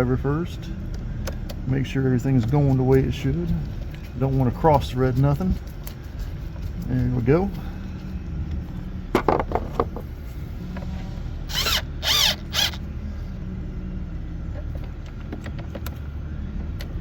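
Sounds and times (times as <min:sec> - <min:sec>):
cordless driver whirring: 0:11.4 - 0:12.9.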